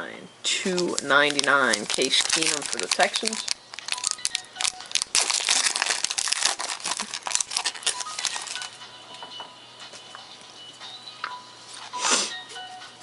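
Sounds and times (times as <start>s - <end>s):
wrapper crinkling and tearing: 0.6s - 8.7s.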